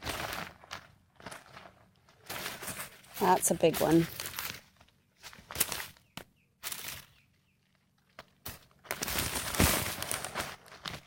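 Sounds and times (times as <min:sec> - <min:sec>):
hands digging through soil: 0:00.0 - 0:07.3, 0:08.0 - 0:11.0.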